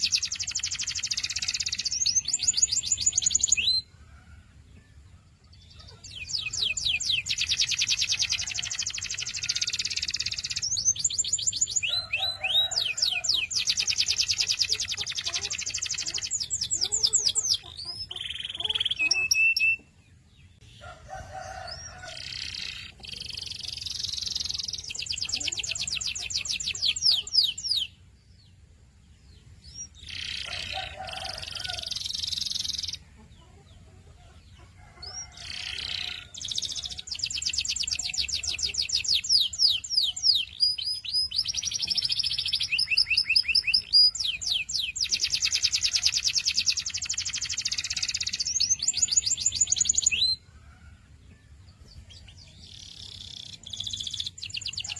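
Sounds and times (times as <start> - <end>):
canary trilling: 0.0 - 3.9, 5.8 - 19.8, 20.7 - 27.9, 29.6 - 33.0, 34.8 - 50.4, 52.6 - 54.9.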